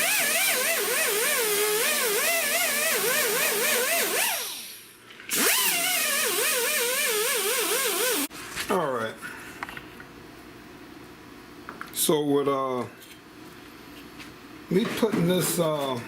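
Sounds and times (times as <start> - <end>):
power tool whining on metal: 0.0 - 8.3.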